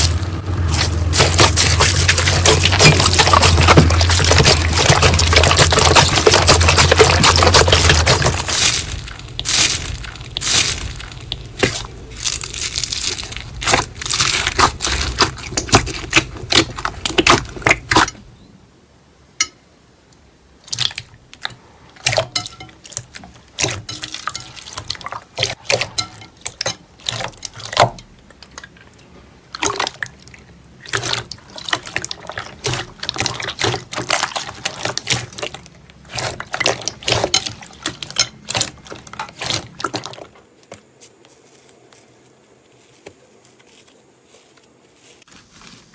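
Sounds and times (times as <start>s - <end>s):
slime crackling and popping: 0.0s - 18.1s.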